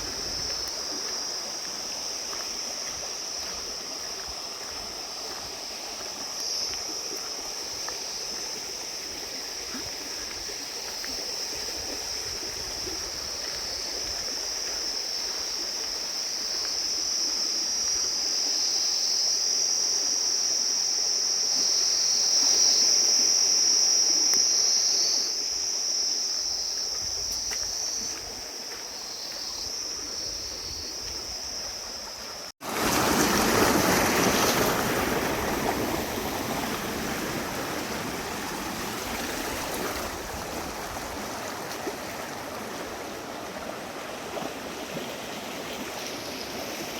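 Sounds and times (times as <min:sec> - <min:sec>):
high-pitched insect drone: 0:00.0 - 0:32.5.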